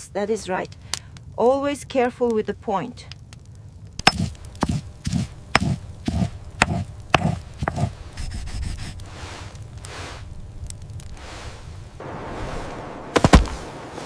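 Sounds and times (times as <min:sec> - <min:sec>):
sharp thudding knocks: 0:04.0 - 0:07.9
rubbing scrape: 0:04.1 - 0:10.3.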